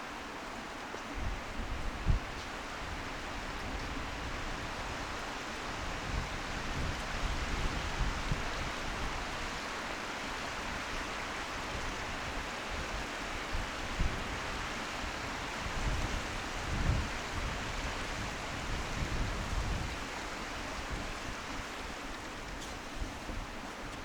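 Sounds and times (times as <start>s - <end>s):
gusts buffeting microphone: 13.5s - 24.0s.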